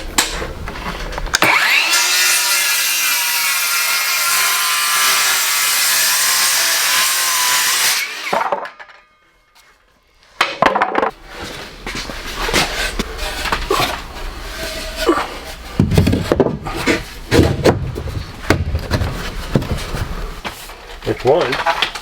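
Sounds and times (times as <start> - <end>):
power saw cutting wood: 1.4 - 8.7
wooden knocks: 10.4 - 11.2, 15.8 - 19.9.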